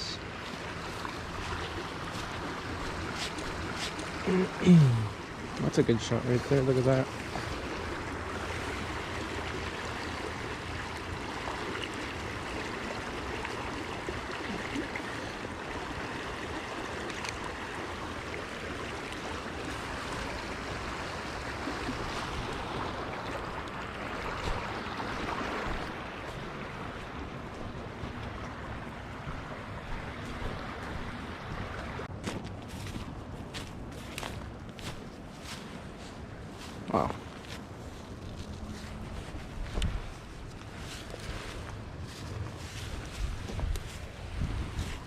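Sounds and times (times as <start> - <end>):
river water rushing: 0.0 - 32.1.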